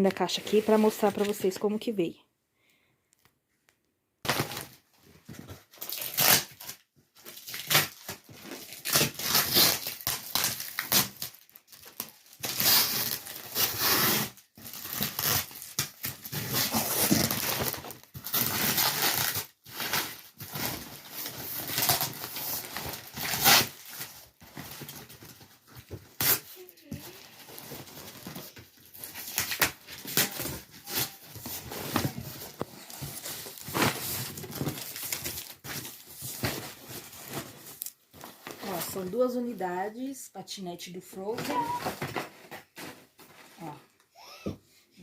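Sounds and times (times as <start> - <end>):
packaging crinkling and rustling: 4.3 - 39.6, 41.3 - 44.0
tape tearing: 5.7 - 38.8.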